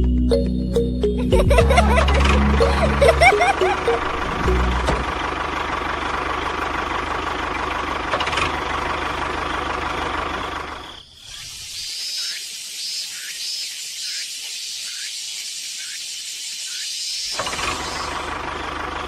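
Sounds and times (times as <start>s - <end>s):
small motor humming: 16.7s - 18.8s.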